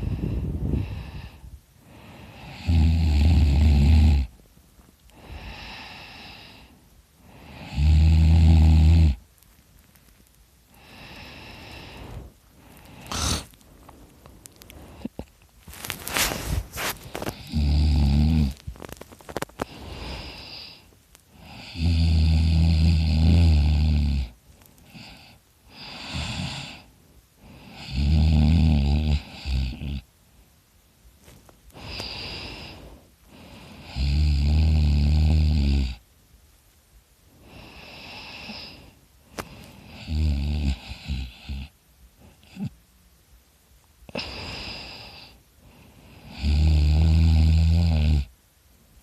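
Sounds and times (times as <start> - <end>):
soft breathing: 0.0 - 2.7, 4.2 - 7.8, 9.2 - 21.8, 24.2 - 27.9, 30.2 - 34.1, 37.2 - 42.7, 44.0 - 46.4
man snoring loudly: 2.2 - 4.3, 7.3 - 9.2, 13.0 - 13.5, 17.3 - 18.6, 21.4 - 24.3, 25.0 - 26.8, 27.5 - 30.0, 33.8 - 36.0, 39.9 - 41.7, 46.2 - 48.3.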